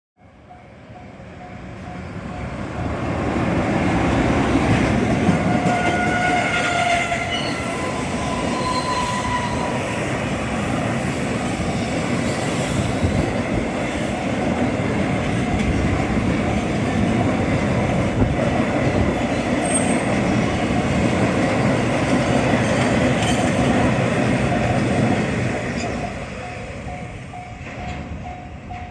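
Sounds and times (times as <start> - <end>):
freight train rolling past: 0.5 - 28.9
high-pitched wheel squeals: 5.5 - 10.1, 19.6 - 20.1.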